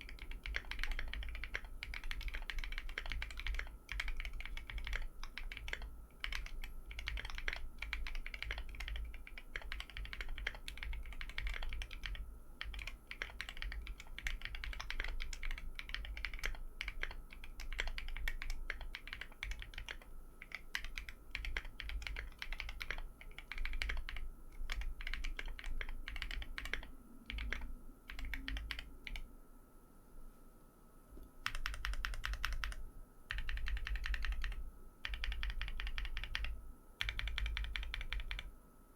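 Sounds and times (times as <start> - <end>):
mechanical keyboard typing: 0.0 - 29.2, 31.4 - 38.5.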